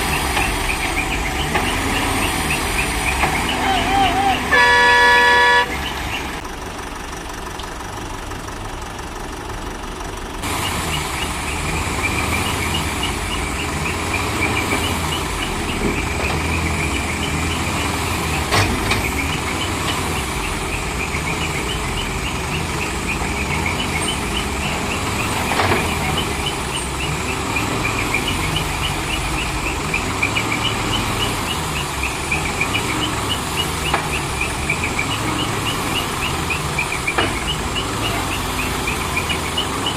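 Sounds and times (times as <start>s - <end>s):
diesel engine running: 0.0s - 39.9s
high repeating chirp: 0.1s - 6.4s.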